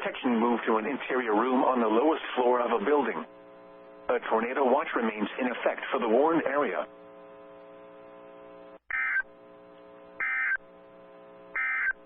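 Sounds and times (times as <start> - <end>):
steady electrical hum: 0.0 - 12.0
digital data tone bursts: 8.9 - 9.2, 10.2 - 10.6, 11.6 - 12.0.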